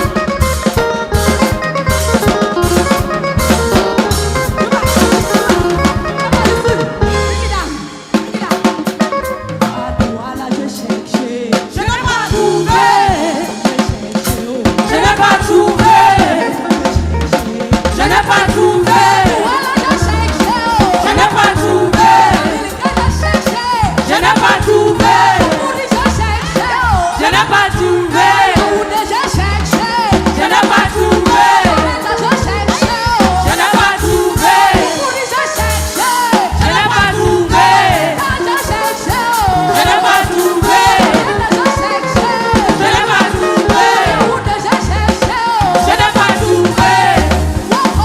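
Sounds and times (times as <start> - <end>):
drum kit: 0.0 - 48.0
choir singing: 12.1 - 47.8.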